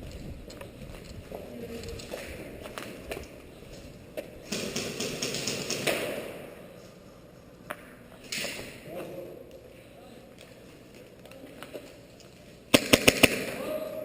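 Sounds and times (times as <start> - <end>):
airsoft gun rapid shots: 4.5 - 6.2, 12.7 - 13.6.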